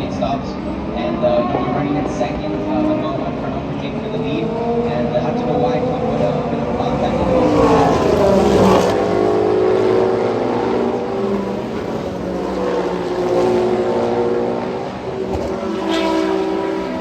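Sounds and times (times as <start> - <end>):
race car engines passing: 0.0 - 17.0.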